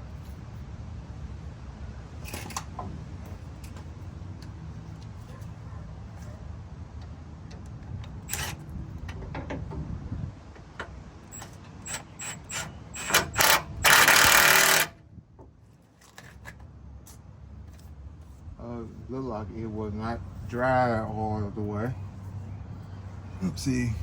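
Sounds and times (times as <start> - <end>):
handheld power tool running: 11.9 - 15.0.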